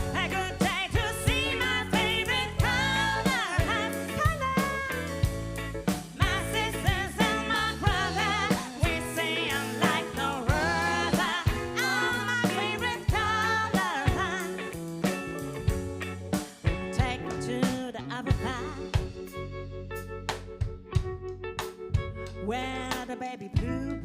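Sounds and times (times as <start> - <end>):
bass: 0.0 - 24.0
funk and soul band playing: 0.0 - 24.0
person singing melody: 6.2 - 14.7.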